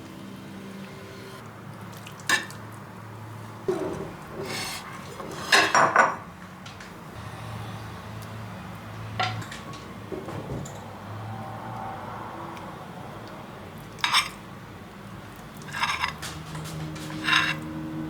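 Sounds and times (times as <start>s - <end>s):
dishes and cutlery clattering: 3.7s - 6.3s, 9.2s - 10.9s, 14.0s - 14.4s, 15.6s - 18.0s.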